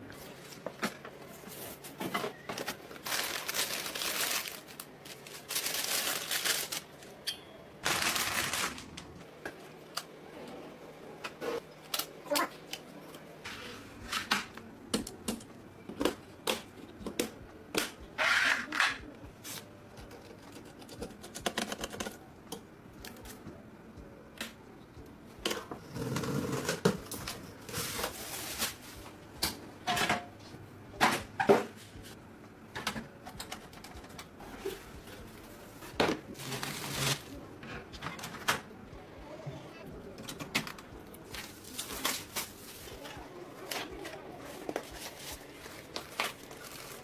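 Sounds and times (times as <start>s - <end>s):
computer parts clicking and tapping: 20.0s - 23.4s, 32.8s - 34.3s.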